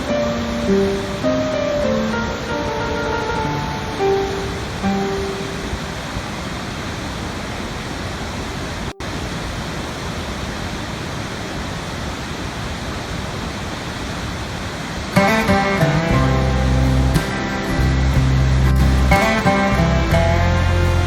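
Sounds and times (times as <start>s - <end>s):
plucked guitar music: 0.0s - 6.1s, 15.2s - 21.0s
waterfall rushing: 0.0s - 21.0s.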